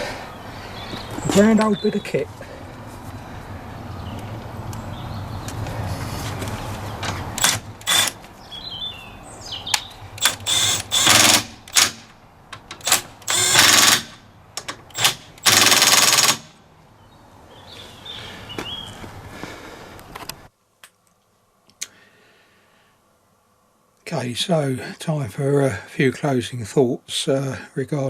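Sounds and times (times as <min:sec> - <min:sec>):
impact wrench hammering: 0:10.2 - 0:16.5.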